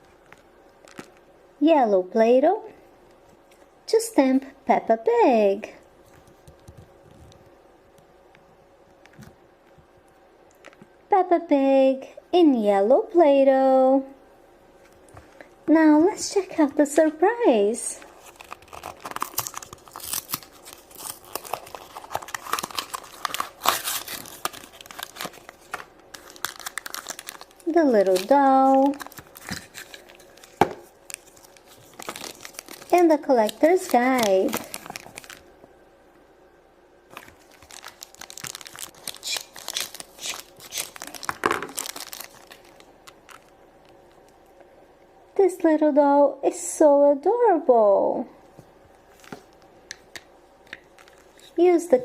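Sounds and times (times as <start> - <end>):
plastic wrapping crinkling: 0.0 - 1.3, 17.9 - 35.5, 37.1 - 44.4, 50.7 - 51.6.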